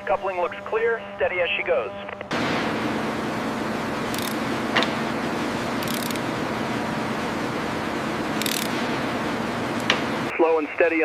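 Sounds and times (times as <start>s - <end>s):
heavy machinery running: 2.3s - 10.4s
sharp clicks: 4.1s - 4.9s, 5.8s - 6.2s, 8.4s - 8.8s.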